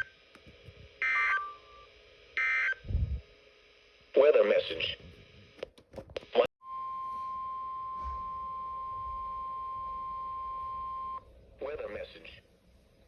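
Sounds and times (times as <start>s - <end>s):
steady alarm tone: 6.6s - 11.3s.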